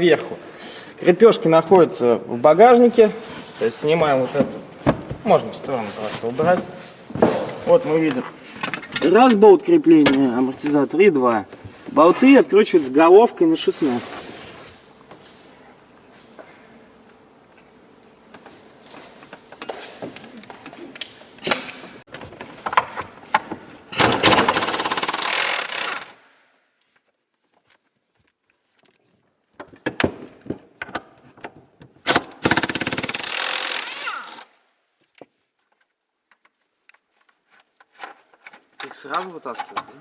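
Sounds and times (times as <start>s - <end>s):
impact wrench hammering: 32.1s - 34.4s.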